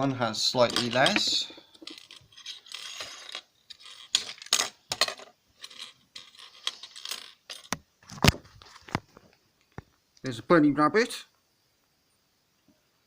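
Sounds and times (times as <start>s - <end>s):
small parts clicking and clattering: 0.6s - 9.0s.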